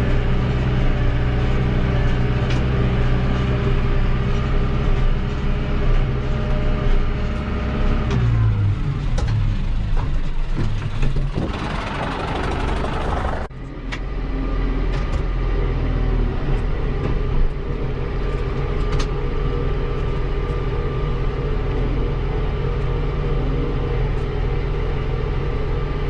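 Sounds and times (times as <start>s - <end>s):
tractor engine running: 0.0s - 13.5s.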